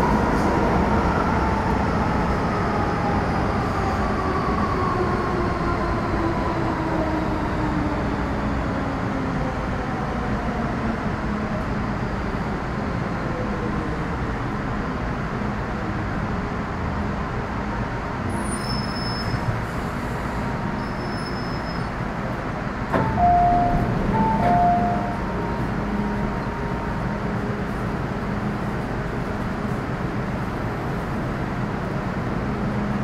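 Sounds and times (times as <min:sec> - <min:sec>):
train hum and rumble: 0:00.0 - 0:33.0.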